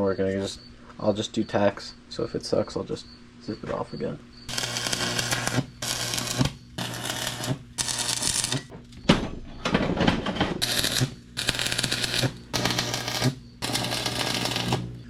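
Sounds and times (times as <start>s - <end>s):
arc welder crackling: 4.5s - 8.7s, 10.6s - 15.0s.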